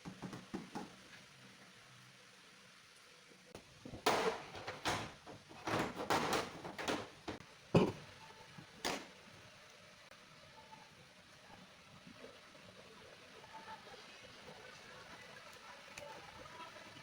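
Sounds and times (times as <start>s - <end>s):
handling knocks and scrapes: 3.6s - 8.0s.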